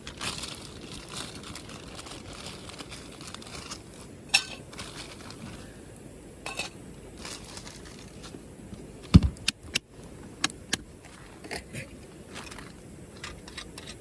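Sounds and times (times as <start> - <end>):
campfire crackling and popping: 0.0 - 14.0
loud thud: 9.1 - 9.4.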